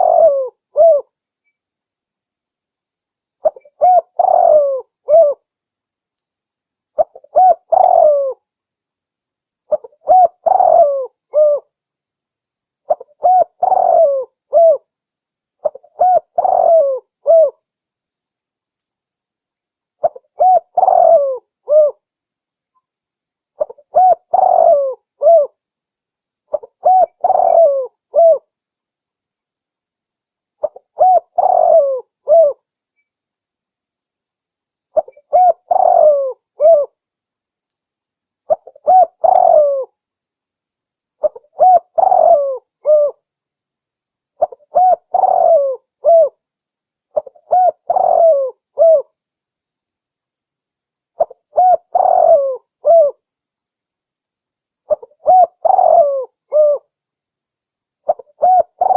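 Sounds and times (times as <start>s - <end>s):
dove cooing: 0.0s - 1.1s, 3.4s - 5.4s, 7.0s - 8.4s, 9.7s - 11.7s, 12.9s - 14.9s, 15.6s - 17.6s, 20.0s - 22.0s, 23.6s - 25.6s, 26.5s - 28.5s, 30.6s - 32.6s, 35.0s - 37.0s, 38.5s - 39.9s, 41.2s - 43.2s, 44.4s - 46.4s, 47.2s - 49.2s, 51.2s - 53.2s, 54.9s - 56.9s, 58.1s - 58.9s.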